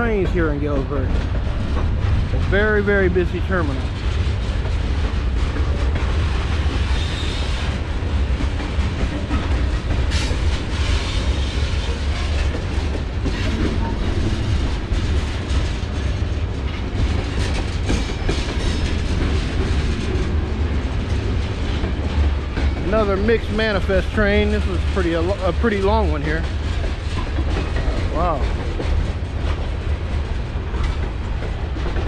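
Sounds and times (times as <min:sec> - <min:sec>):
freight train rumbling past: 0:00.0 - 0:32.0
train wheels clacking: 0:00.0 - 0:32.0.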